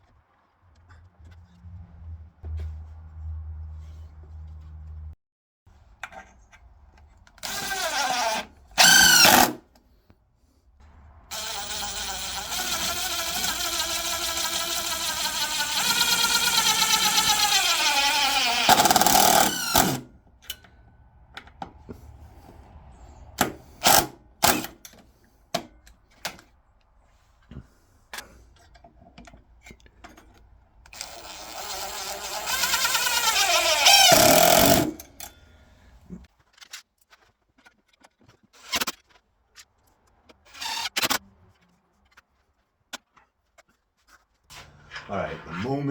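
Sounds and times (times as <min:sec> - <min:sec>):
power drill motor running: 0:07.4 - 0:09.6, 0:11.3 - 0:20.1, 0:23.8 - 0:24.8, 0:30.9 - 0:35.3.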